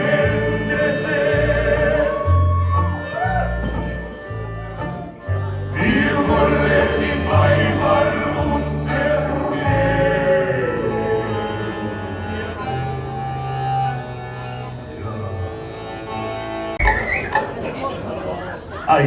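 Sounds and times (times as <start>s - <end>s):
people singing: 0.0s - 2.6s, 5.7s - 13.1s
held bass notes: 0.0s - 18.1s
live band music: 11.6s - 17.8s.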